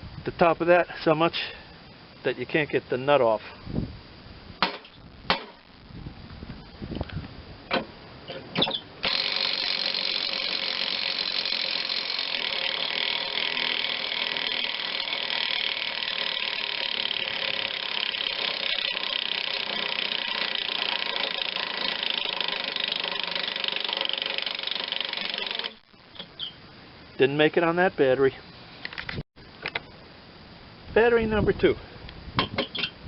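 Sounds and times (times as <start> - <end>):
impact wrench hammering: 4.6 - 5.6.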